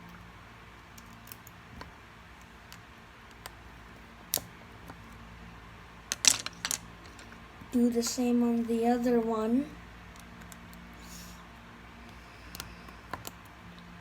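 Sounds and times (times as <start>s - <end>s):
plastic bricks clicking together: 6.1s - 7.3s.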